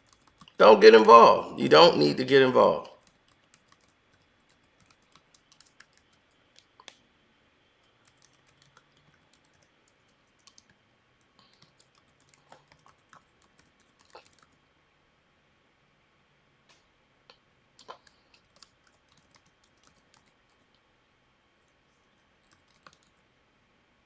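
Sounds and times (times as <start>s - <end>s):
faint clicks and taps: 0.0s - 0.6s, 3.0s - 7.1s, 7.8s - 14.6s, 16.7s - 20.9s, 21.6s - 23.2s.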